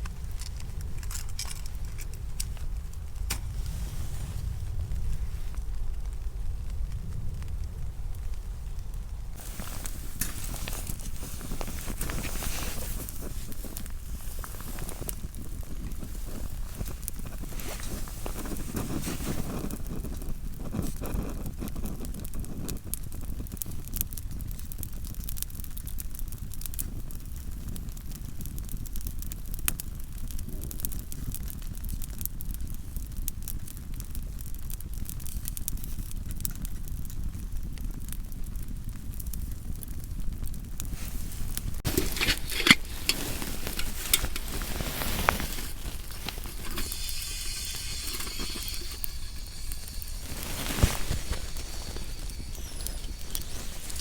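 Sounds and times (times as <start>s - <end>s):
wood fire crackling: 0.0s - 54.0s
food sizzling in a pan: 41.0s - 54.0s.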